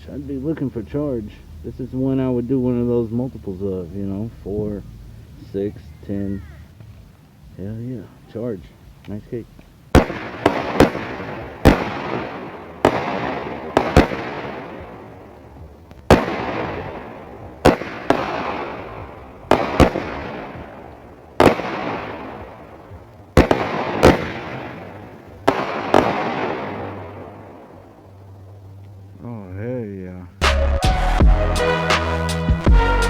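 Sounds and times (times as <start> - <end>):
firework bangs with echo: 9.9 - 15.5, 16.1 - 27.6.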